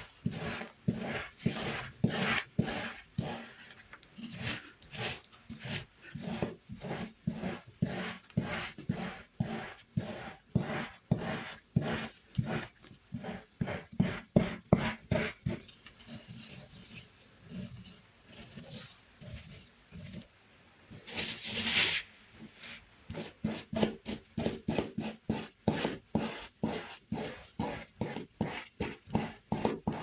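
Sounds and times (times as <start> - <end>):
sand rasping scrapes: 0.0 - 20.3, 20.9 - 30.0.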